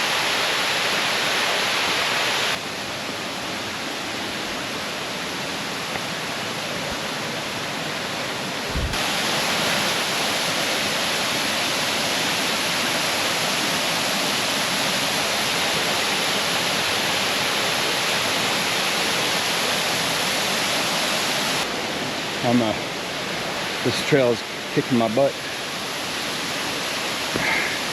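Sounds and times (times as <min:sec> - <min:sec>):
waterfall rushing: 0:00.0 - 0:27.9
low bump: 0:08.7 - 0:09.0.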